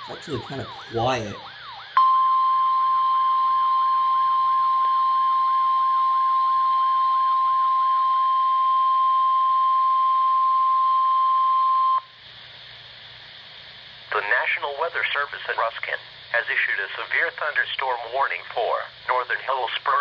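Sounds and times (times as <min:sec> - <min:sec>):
high steady alarm tone: 0:00.0 - 0:12.1.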